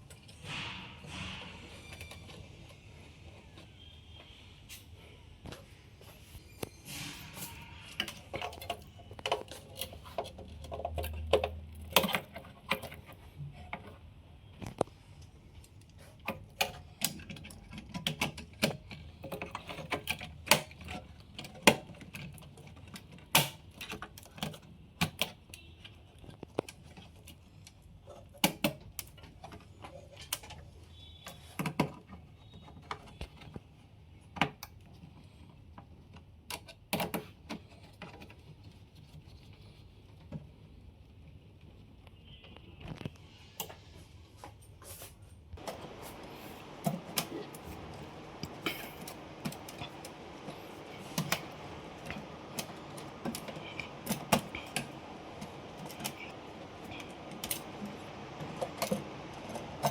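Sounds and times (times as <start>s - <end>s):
server parts clicking: 45.6s - 59.9s.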